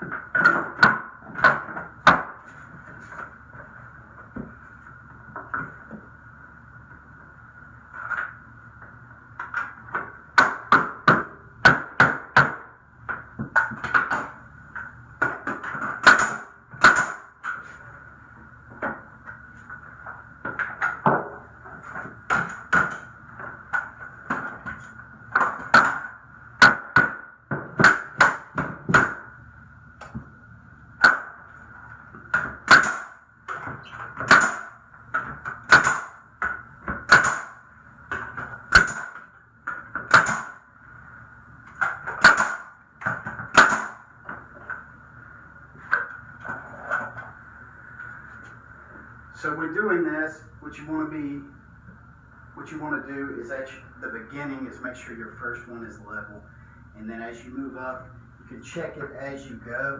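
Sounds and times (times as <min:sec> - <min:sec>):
nails hammered into wood: 0:10.4 - 0:12.7, 0:15.2 - 0:17.3, 0:25.3 - 0:29.2, 0:32.3 - 0:39.2, 0:39.9 - 0:40.6, 0:41.8 - 0:44.0.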